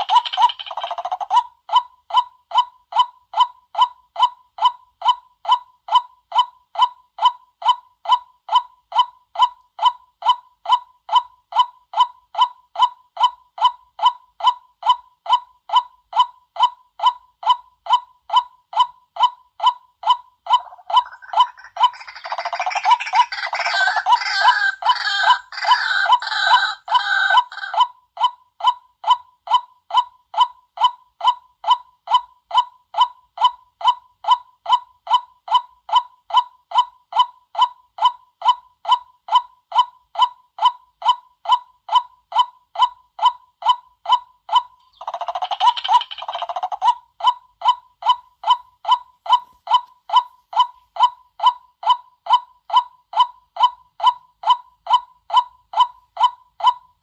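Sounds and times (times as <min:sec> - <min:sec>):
waterhen kwak calls: 0:20.5 - 0:27.8
harsh chattering chorus: 0:20.6 - 0:27.8.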